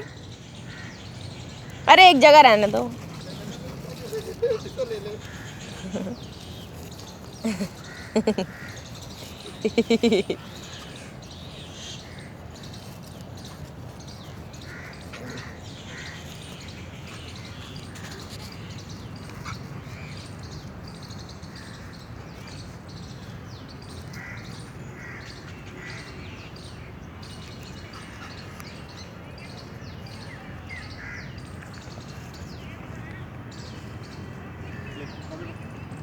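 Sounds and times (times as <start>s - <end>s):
harsh bird calls: 0.0s - 13.1s.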